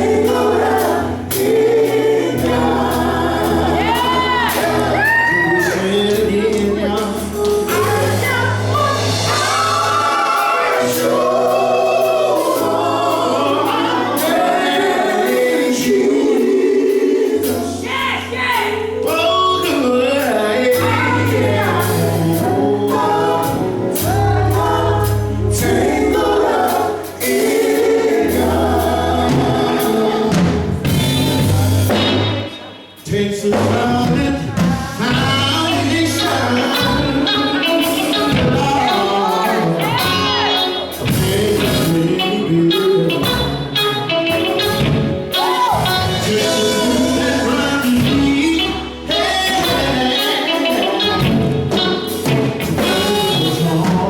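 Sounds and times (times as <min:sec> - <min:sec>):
band accompaniment: 0:00.0 - 0:54.0
gospel quartet singing: 0:00.0 - 0:54.0.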